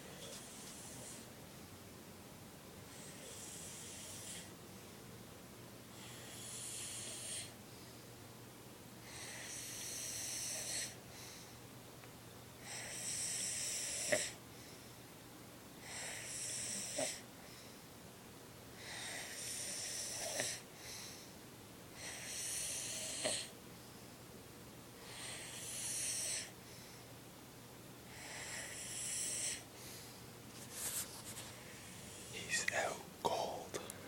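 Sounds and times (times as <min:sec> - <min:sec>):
man snoring: 0:03.1 - 0:04.5, 0:06.0 - 0:07.5, 0:09.1 - 0:11.0, 0:12.6 - 0:14.4, 0:15.8 - 0:17.2, 0:18.8 - 0:20.6, 0:22.0 - 0:23.5, 0:25.1 - 0:26.5, 0:28.1 - 0:29.6.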